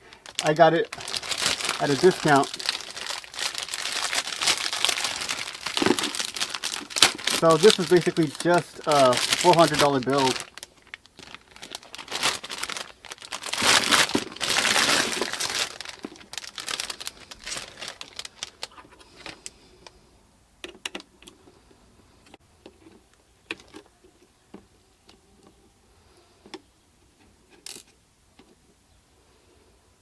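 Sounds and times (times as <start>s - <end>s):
packaging rustling: 0.0s - 19.5s.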